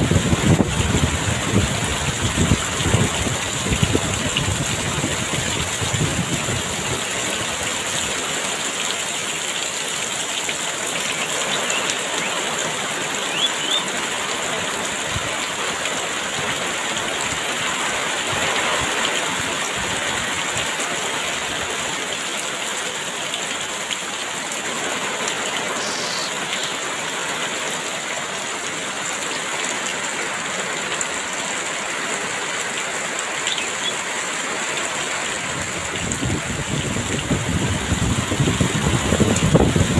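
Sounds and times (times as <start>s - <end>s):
heavy rain falling: 0.0s - 39.9s
faint bird chirps: 10.8s - 14.2s, 25.7s - 26.9s, 31.9s - 35.4s.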